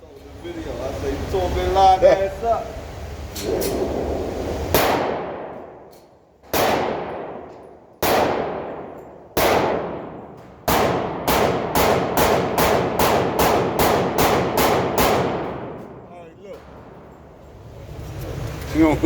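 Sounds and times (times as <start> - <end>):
long gunshot echo: 3.5 - 5.9, 6.5 - 16.1
pistol shots: 4.7 - 17.2.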